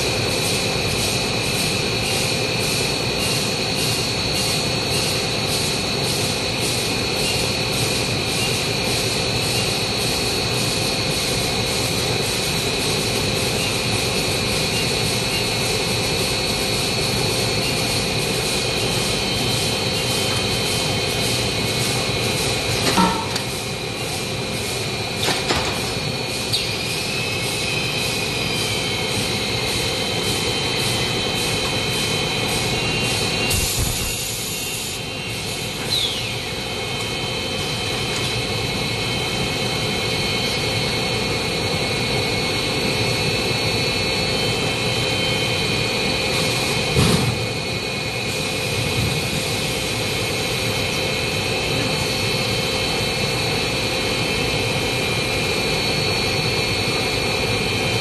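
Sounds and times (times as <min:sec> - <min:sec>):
stretch film machine whine: 0:00.0 - 0:58.0
hiss of air: 0:25.8 - 0:38.4.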